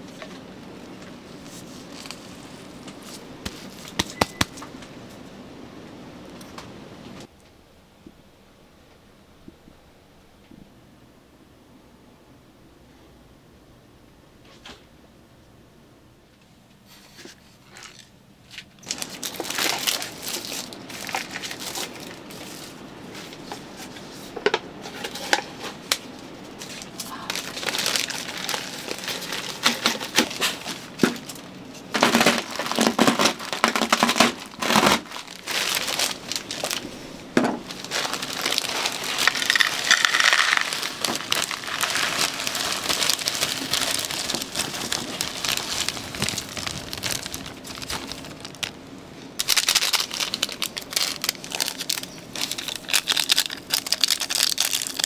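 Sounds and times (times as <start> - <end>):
plastic packaging crinkling: 0.0 - 4.6, 17.6 - 24.0, 24.9 - 55.0.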